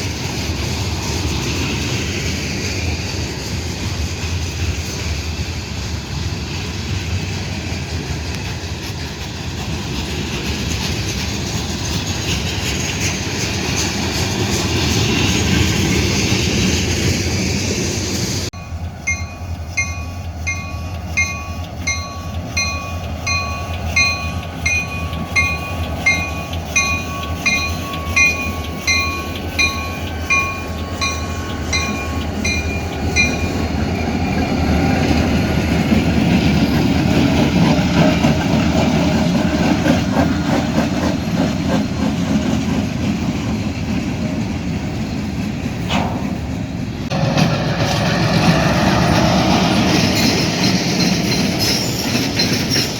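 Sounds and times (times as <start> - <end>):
train wheels clattering on rails: 0.0 - 52.9
railroad crossing bell ringing: 18.5 - 34.8, 49.0 - 52.9.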